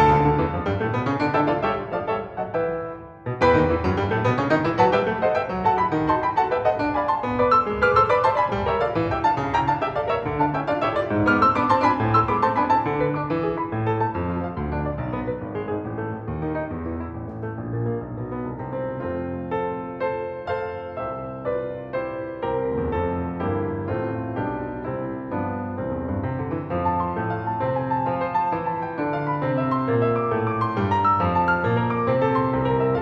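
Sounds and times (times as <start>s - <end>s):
piano music: 0.0s - 33.0s.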